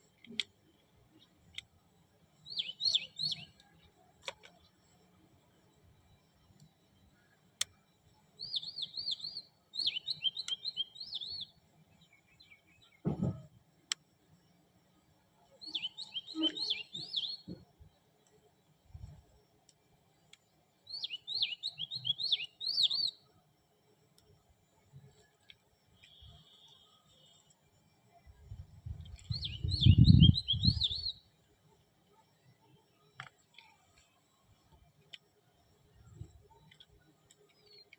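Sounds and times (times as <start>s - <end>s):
small clicks: 0.1s - 0.6s, 1.4s - 1.8s, 3.5s - 4.8s, 33.1s - 35.3s, 36.5s - 37.9s
soft low thump: 13.0s - 13.5s
bird chirping rapidly: 29.3s - 31.2s.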